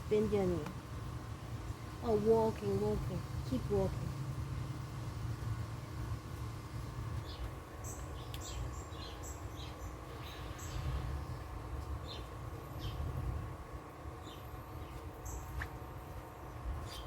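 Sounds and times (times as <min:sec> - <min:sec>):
birds chirping: 0:06.8 - 0:13.4, 0:14.2 - 0:15.7.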